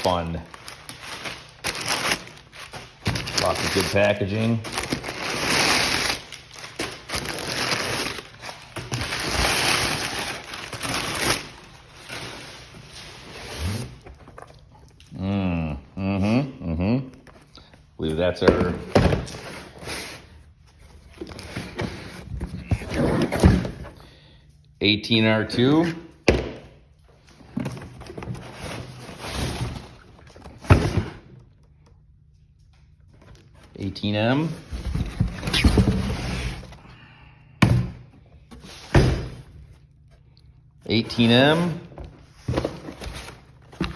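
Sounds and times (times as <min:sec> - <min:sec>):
packing material rustling: 0:00.0 - 0:14.1.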